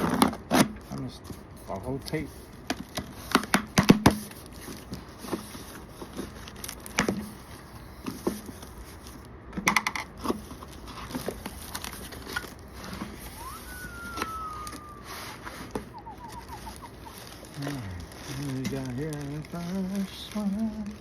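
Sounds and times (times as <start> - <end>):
tape and packaging crinkling: 0.0 - 21.0
whistle-like tone: 13.2 - 17.3.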